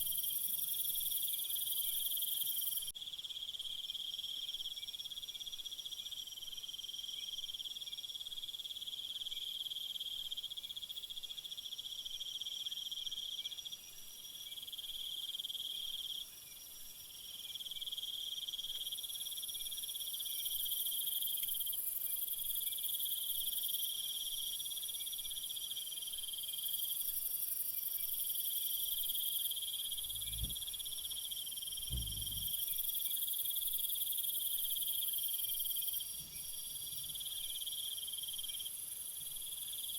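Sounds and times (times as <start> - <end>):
crickets trilling: 26.3 - 39.9
soft low thumps: 30.0 - 30.8, 31.8 - 32.6.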